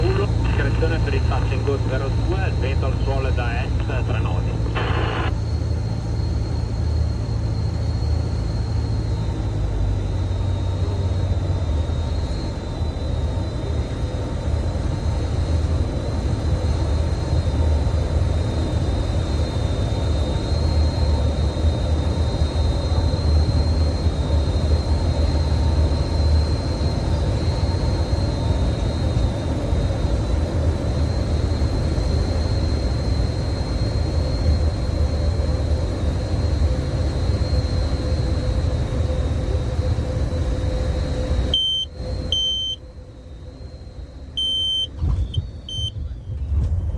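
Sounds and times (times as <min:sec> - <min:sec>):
thin high whine: 0:00.0 - 0:10.0
airplane engine and propeller drone: 0:00.0 - 0:46.9.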